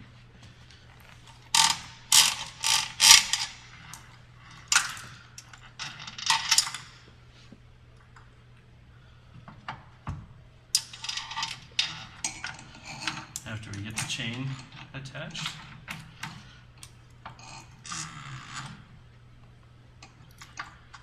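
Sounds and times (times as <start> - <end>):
metal parts clinking and rattling: 1.0 - 6.9, 10.8 - 16.4.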